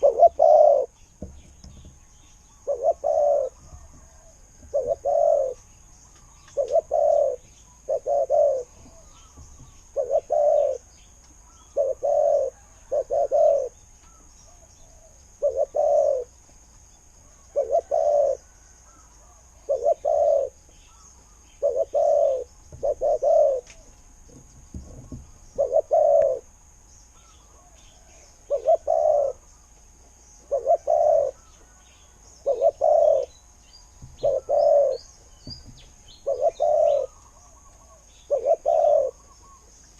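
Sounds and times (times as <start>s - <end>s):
dove cooing: 0.0s - 1.0s, 2.5s - 16.4s, 17.3s - 26.6s, 27.4s - 29.5s, 30.4s - 31.8s, 32.4s - 33.4s, 34.1s - 39.7s.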